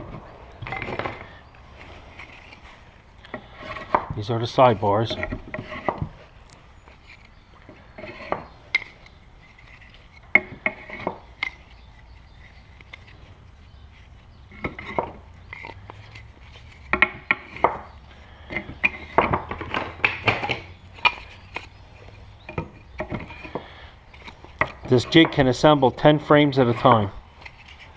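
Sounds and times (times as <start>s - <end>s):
wood knocking on wood: 10.3s - 11.6s, 16.8s - 20.7s.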